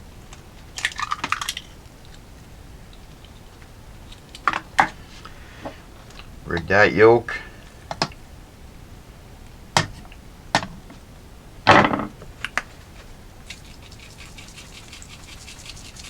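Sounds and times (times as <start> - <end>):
quick scratching strokes: 13.4 - 16.0.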